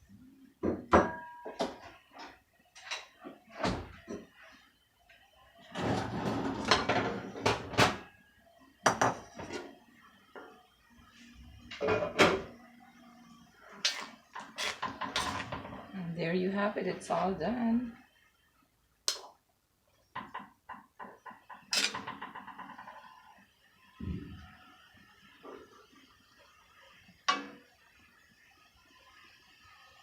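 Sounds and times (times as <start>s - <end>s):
cookware clattering: 13.9s - 15.6s, 21.7s - 22.2s
utensils scraping: 13.9s - 15.6s.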